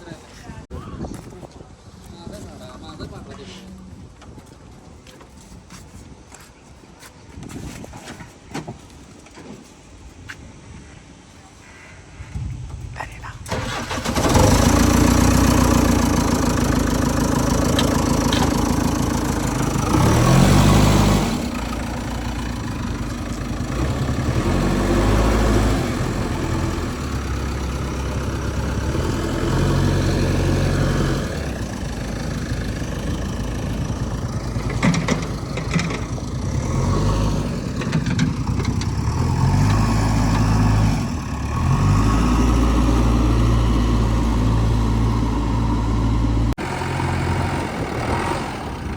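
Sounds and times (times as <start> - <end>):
diesel engine running: 13.5 - 48.9.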